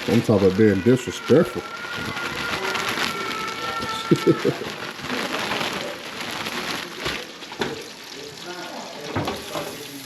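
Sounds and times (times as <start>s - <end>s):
fish sizzling in hot oil: 0.0s - 10.0s.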